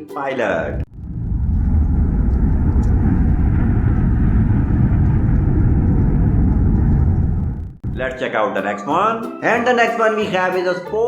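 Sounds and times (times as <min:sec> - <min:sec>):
faint steady hum: 0:00.6 - 0:08.1
jet engine rumble: 0:00.6 - 0:08.2.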